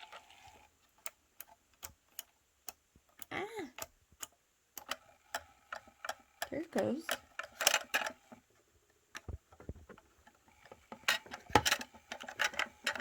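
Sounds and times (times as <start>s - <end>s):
plastic clicks and knocks: 9.2s - 13.0s.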